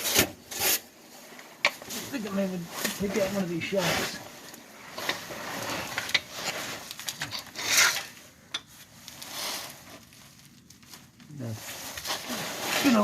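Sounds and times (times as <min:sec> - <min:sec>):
hand tool scraping: 0:04.8 - 0:08.2, 0:11.6 - 0:13.0.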